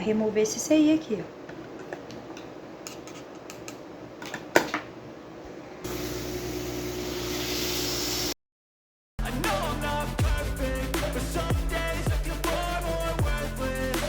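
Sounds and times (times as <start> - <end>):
hot air station blowing: 5.8 - 8.4.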